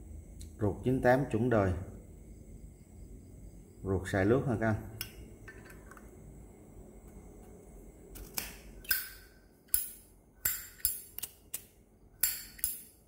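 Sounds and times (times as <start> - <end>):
lighter lid metallic clinks: 8.9 - 13.0.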